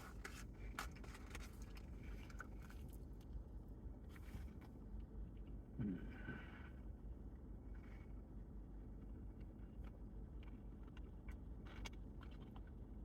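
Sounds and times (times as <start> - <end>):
person chewing food: 10.4 - 12.7.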